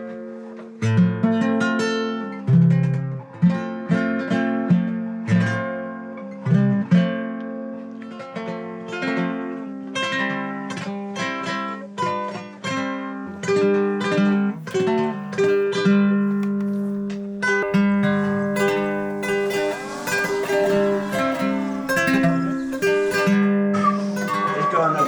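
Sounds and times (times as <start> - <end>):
acoustic guitar picking melody: 0.0 - 25.0.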